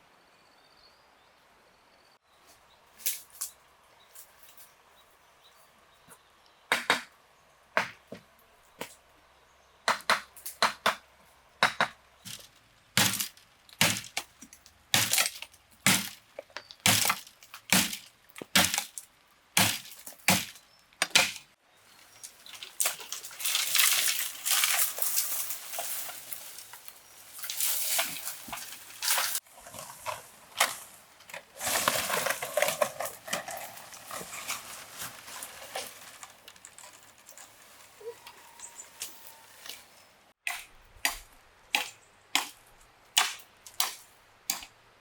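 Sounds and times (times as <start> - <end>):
crackling and rustling: 12.2 - 40.1
sharp strikes on wood: 14.9 - 16.2, 43.2 - 44.7.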